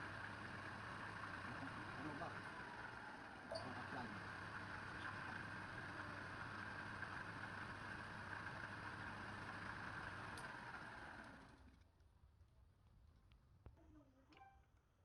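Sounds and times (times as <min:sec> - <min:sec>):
wood lathe humming: 0:00.0 - 0:11.8.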